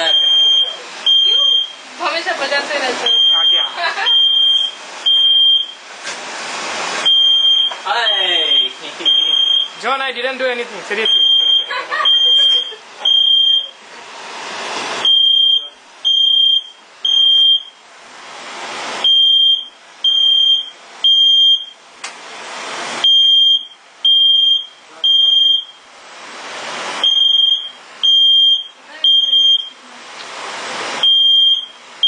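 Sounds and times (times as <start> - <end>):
smoke alarm beeping: 0.0 - 1.8, 3.0 - 5.8, 7.0 - 10.0, 11.0 - 13.8, 15.0 - 17.8, 19.0 - 21.8, 23.0 - 25.9, 27.0 - 29.8, 31.0 - 32.0.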